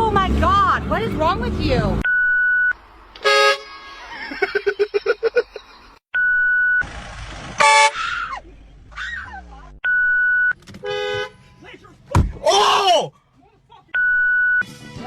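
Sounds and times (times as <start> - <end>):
short electronic beeps: 2.0 - 2.8
train air horn blasts: 3.2 - 3.9.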